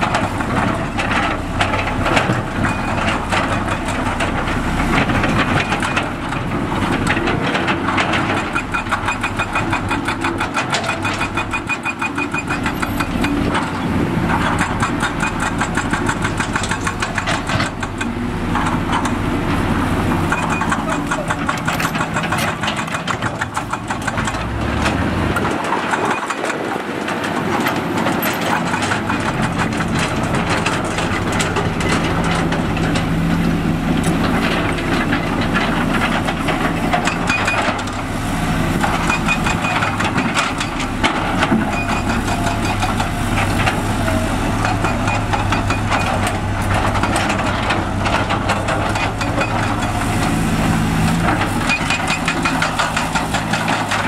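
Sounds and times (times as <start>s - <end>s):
heavy machinery diesel engines: 0.0s - 54.0s
sharp clicks clattering: 20.3s - 33.0s.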